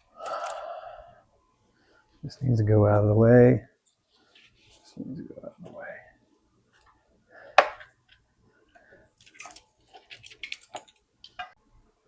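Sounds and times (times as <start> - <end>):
plastic connectors being handled: 7.6 - 11.6.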